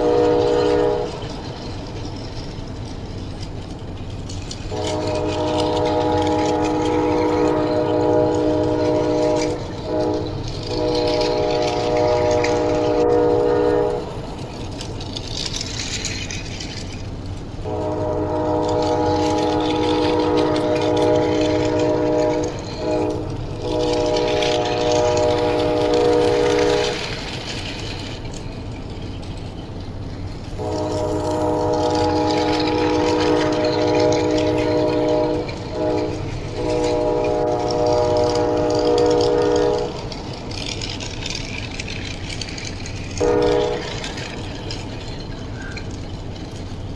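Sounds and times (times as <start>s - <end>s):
train horn blasts: 0.0s - 1.6s, 4.7s - 14.5s, 17.6s - 27.4s, 30.6s - 40.8s, 43.2s - 45.0s
train rumble and clatter: 0.0s - 46.9s.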